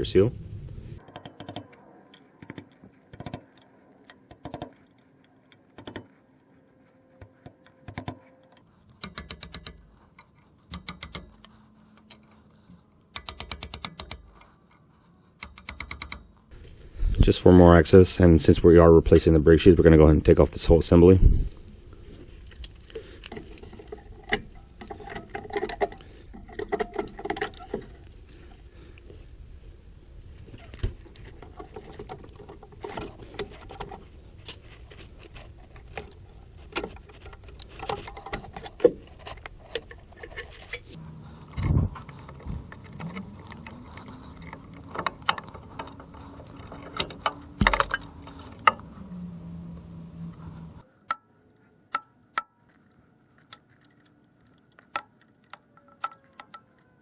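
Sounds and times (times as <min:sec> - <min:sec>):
hand tools clicking and knocking: 0:01.0 - 0:06.1, 0:07.2 - 0:16.5, 0:22.6 - 0:28.1, 0:30.6 - 0:49.0, 0:51.9 - 0:57.0
low hum rising in pitch: 0:48.6 - 0:50.8.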